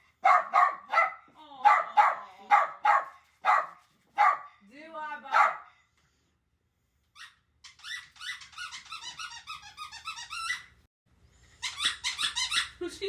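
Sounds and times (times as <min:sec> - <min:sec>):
squeaky toy squeaking: 0:07.1 - 0:10.8, 0:11.6 - 0:12.8.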